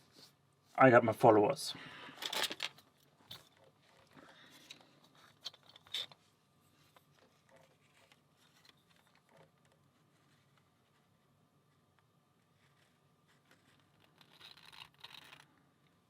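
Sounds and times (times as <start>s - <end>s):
small metal lock parts clicking: 2.2s - 6.2s, 13.7s - 15.5s.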